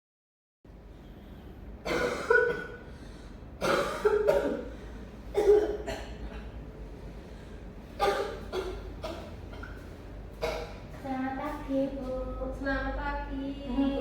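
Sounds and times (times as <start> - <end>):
person coughing: 1.8 - 2.9, 3.6 - 6.5, 8.0 - 9.8, 10.4 - 10.8.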